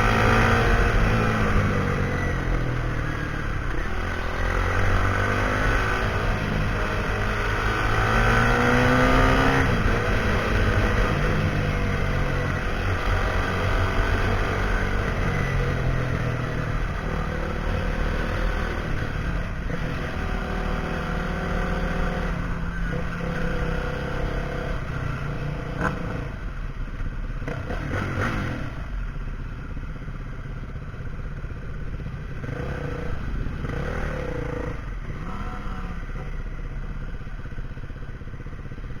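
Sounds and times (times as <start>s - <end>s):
motorcycle engine revving: 0.0s - 39.0s.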